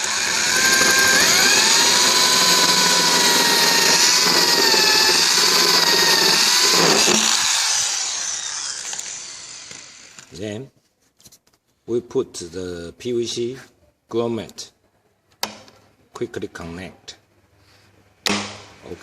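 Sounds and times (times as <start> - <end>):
electric drill whining: 0.0 - 10.4.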